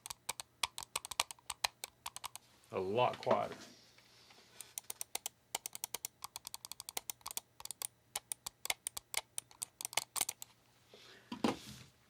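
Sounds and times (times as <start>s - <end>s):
mouse buttons clicking: 0.0s - 2.4s, 4.6s - 10.5s.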